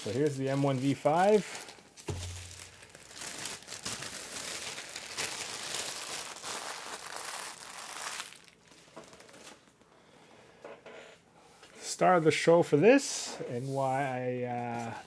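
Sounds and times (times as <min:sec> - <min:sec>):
plastic wrap crinkling: 0:00.0 - 0:09.8.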